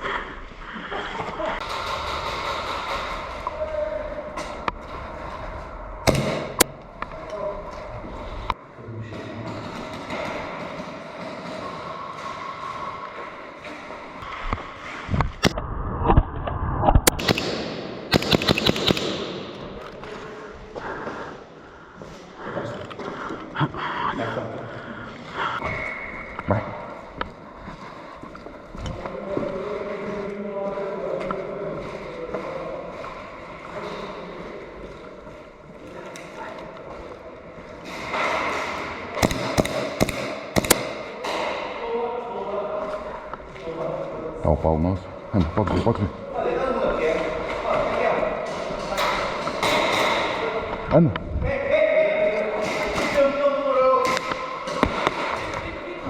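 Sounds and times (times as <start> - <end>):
airsoft gun shots: 17.1 - 19.6, 39.2 - 41.1.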